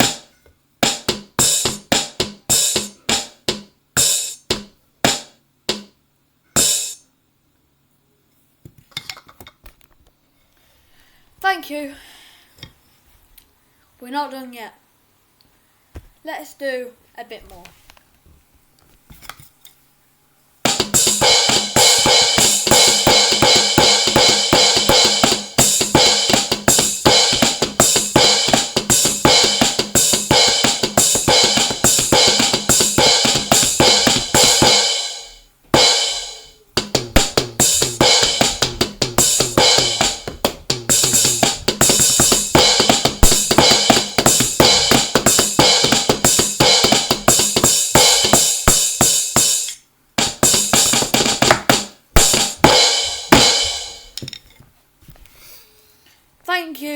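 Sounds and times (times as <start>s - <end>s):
electronic drum kit playing: 0.0s - 6.0s, 6.6s - 7.1s, 20.6s - 54.2s.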